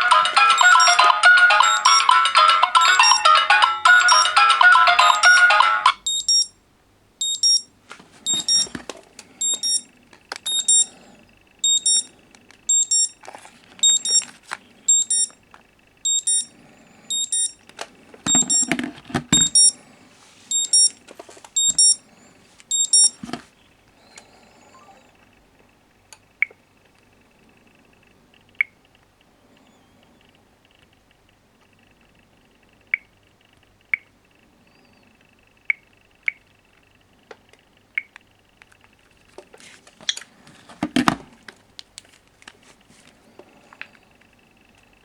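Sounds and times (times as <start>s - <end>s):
phone ringtone melody: 0.0s - 6.5s, 7.2s - 7.7s, 9.4s - 9.8s, 10.5s - 10.9s, 11.6s - 12.1s, 14.9s - 15.3s, 16.1s - 16.5s, 17.1s - 17.6s, 18.3s - 18.8s, 19.4s - 19.8s, 20.5s - 20.9s, 21.6s - 22.0s, 22.7s - 23.2s
smartphone alarm double beeps: 0.1s - 4.4s, 5.0s - 6.6s, 7.2s - 7.7s, 8.3s - 8.7s, 9.4s - 9.9s, 10.5s - 10.9s, 11.6s - 12.1s, 12.7s - 13.2s, 13.8s - 14.2s, 14.9s - 15.4s, 16.0s - 16.5s, 17.1s - 17.6s, 18.3s - 18.7s, 19.4s - 19.8s, 20.5s - 21.0s, 21.6s - 22.0s, 22.7s - 23.2s.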